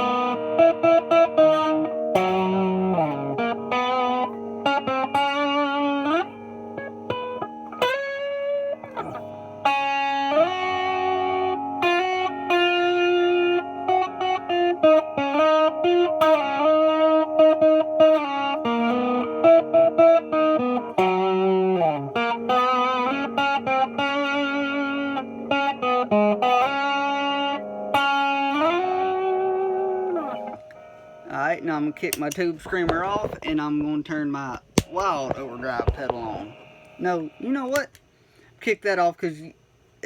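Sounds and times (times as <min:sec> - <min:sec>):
overdriven electric guitar lead: 0:00.0 - 0:38.0.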